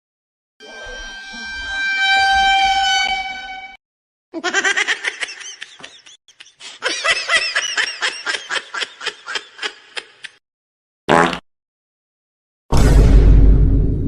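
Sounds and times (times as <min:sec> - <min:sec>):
high-pitched laughter: 0:04.4 - 0:10.4.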